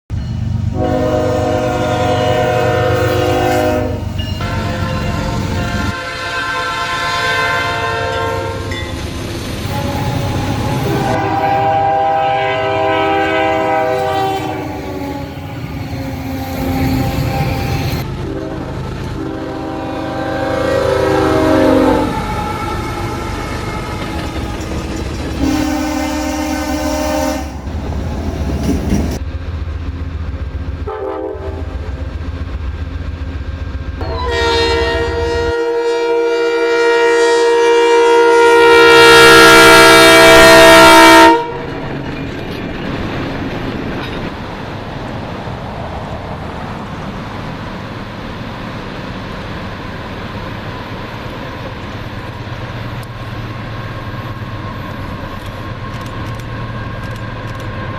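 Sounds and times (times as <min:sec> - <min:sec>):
freight train rumbling past: 0:00.1 - 0:57.9
locomotive air horn blasts: 0:00.8 - 0:08.8, 0:09.7 - 0:24.0, 0:25.4 - 0:27.7, 0:30.9 - 0:31.9, 0:34.0 - 0:41.7.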